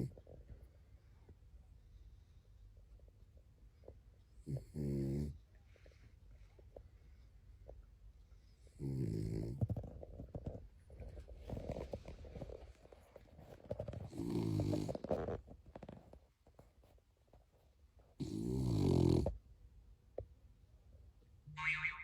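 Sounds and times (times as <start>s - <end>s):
dog snoring: 4.4s - 5.4s, 8.6s - 10.4s, 13.6s - 15.4s, 18.2s - 19.4s.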